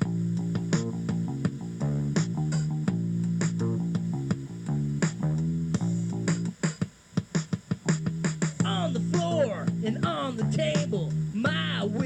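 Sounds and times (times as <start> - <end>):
bass guitar playing: 0.0 - 6.8, 7.4 - 12.0
steady drum beat: 0.0 - 12.0
guitar playing: 8.6 - 12.0.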